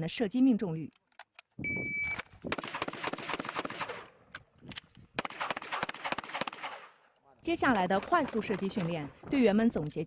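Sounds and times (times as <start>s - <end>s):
brief high beep: 1.6s - 2.2s
rapid gunfire: 2.5s - 4.0s, 5.2s - 7.0s, 7.7s - 9.2s.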